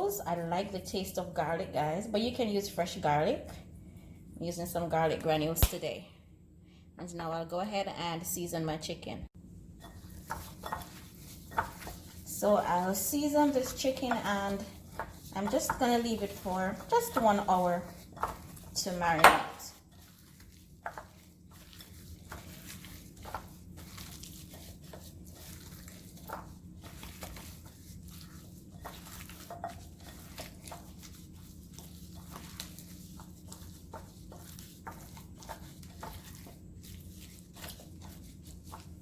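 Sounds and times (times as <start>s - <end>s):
low steady hum: 0.0s - 39.0s
hands squishing raw chicken: 10.1s - 39.0s.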